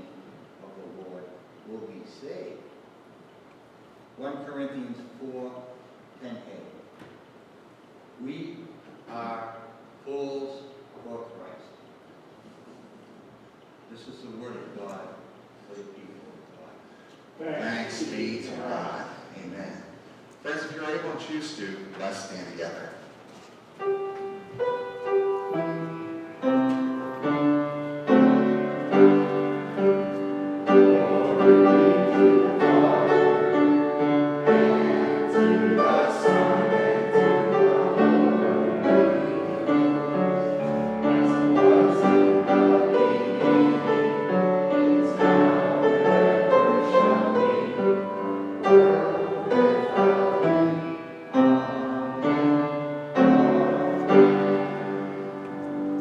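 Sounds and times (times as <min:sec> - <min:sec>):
piano playing chords: 0:23.8 - 0:56.0.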